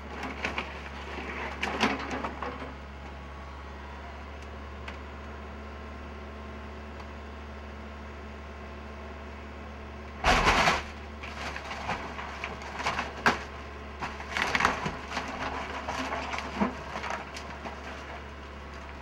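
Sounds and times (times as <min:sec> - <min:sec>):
building crashing: 0:10.2 - 0:13.5.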